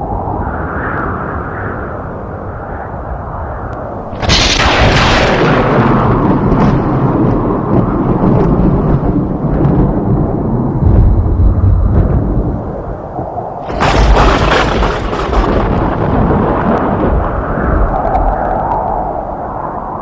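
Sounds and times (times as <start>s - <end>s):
rolling thunder rumble: 3.8s - 20.0s
thunderclap sharp crack: 4.1s - 10.2s, 10.8s - 12.9s, 13.6s - 18.9s.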